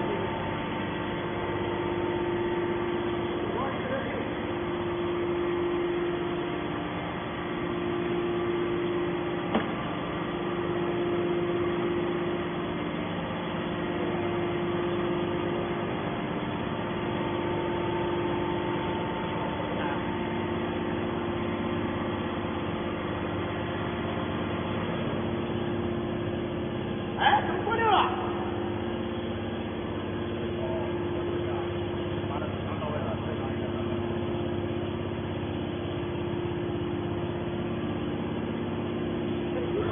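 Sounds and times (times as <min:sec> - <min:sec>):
hydraulic baler motor humming: 0:00.0 - 0:39.9.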